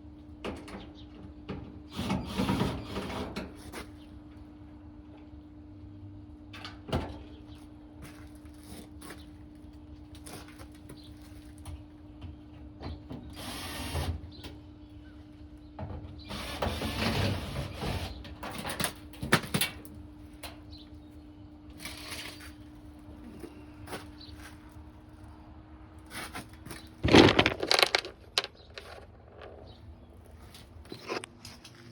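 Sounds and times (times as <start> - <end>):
tools scraping and rattling on metal: 27.0 - 29.8.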